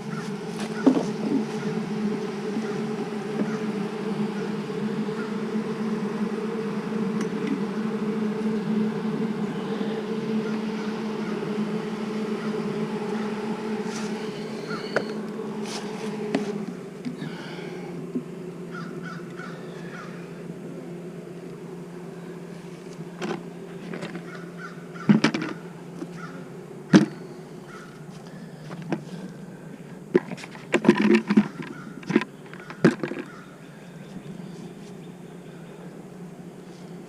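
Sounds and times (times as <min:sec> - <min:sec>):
bees humming: 0:00.0 - 0:37.0
wooden hive frames knocking: 0:00.1 - 0:04.5, 0:10.3 - 0:17.2, 0:25.0 - 0:26.2, 0:30.2 - 0:33.4.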